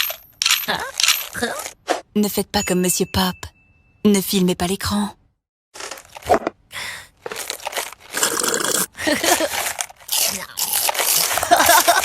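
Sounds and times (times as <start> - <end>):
crunching crinkling noise: 5.8 - 12.0.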